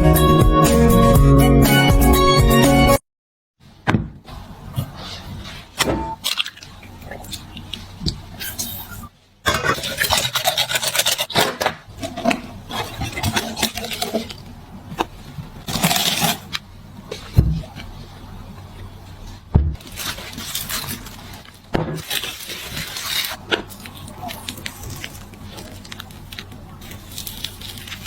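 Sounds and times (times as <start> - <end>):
dull thumps: 19.5 - 19.9.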